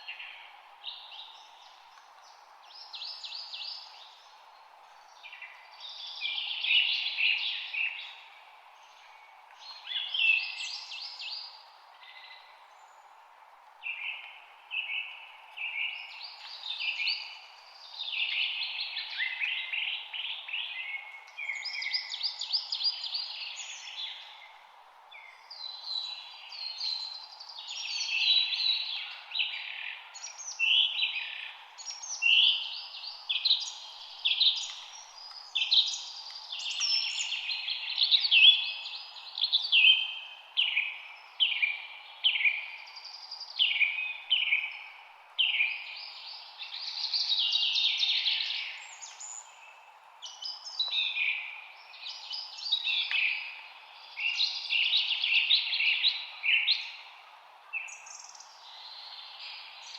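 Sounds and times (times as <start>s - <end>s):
low background hiss: 0.0s - 59.9s
birds singing: 13.9s - 24.6s, 25.2s - 59.9s.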